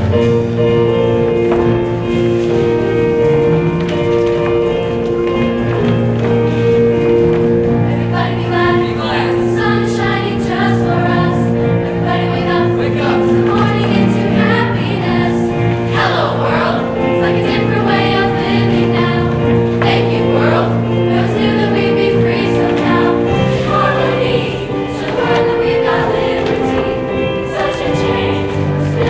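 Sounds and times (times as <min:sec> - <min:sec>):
choir singing: 0:00.0 - 0:29.0
sustained instrumental accompaniment: 0:00.0 - 0:29.0.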